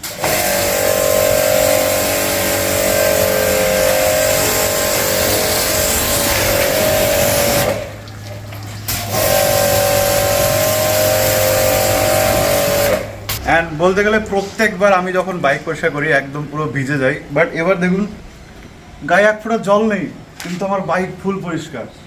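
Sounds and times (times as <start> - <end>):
pressure washer motor humming: 0.0 - 15.9
water jet hissing: 0.0 - 15.9.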